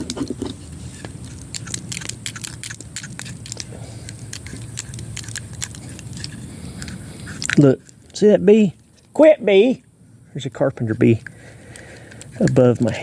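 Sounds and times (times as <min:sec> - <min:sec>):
steady low hum: 0:00.0 - 0:13.0
light metallic clicks and taps: 0:10.9 - 0:13.0.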